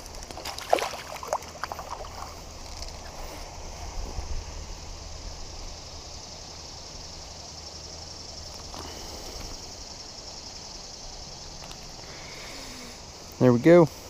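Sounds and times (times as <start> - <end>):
high-pitched insect chorus: 0.0 - 14.0.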